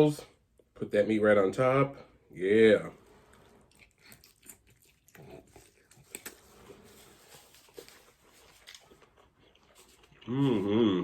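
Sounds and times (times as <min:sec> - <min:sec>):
person chewing food: 0:03.1 - 0:10.9.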